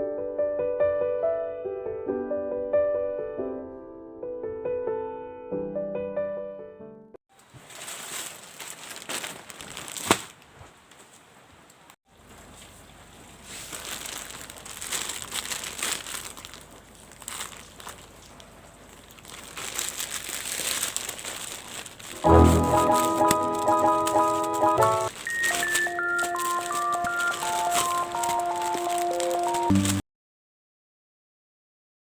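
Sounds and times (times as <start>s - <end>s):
packaging crinkling and rustling: 7.3s - 30.0s
packaging tearing: 7.4s - 11.0s, 13.4s - 30.0s.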